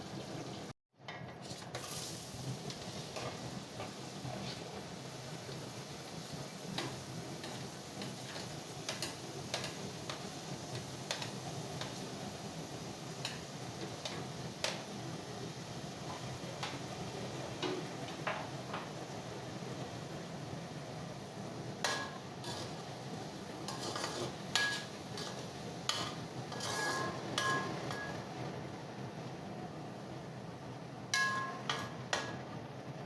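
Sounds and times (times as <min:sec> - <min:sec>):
metal spoon stirring in a pan: 0:02.7 - 0:04.7, 0:06.8 - 0:12.0, 0:21.8 - 0:28.2, 0:31.2 - 0:32.0
spoon tapping against pan: 0:31.2 - 0:32.4.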